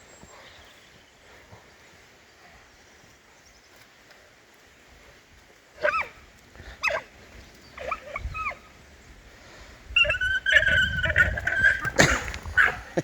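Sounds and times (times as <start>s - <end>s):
alpacas screaming: 5.8s - 6.2s, 6.8s - 7.1s, 7.8s - 8.7s, 10.0s - 12.9s.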